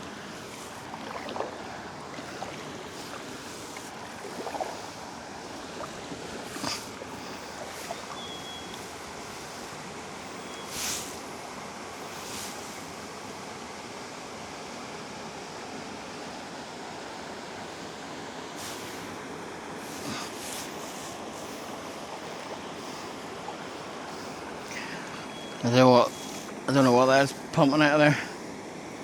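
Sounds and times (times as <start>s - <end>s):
paddle splashes: 0.0s - 13.7s, 17.8s - 29.0s
water rushing: 0.0s - 29.0s.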